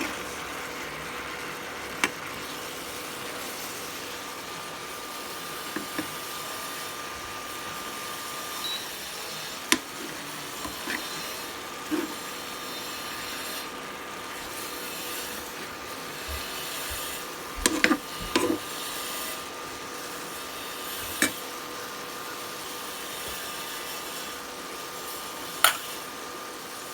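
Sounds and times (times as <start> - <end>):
food hissing in pan: 0.0 - 26.9
utensil scraping pan: 5.1 - 21.4.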